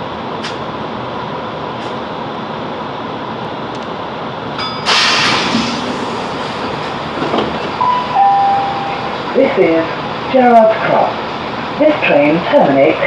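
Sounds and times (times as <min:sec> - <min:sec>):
train running noise: 0:00.0 - 0:13.0
loud hiss of air: 0:04.8 - 0:07.2.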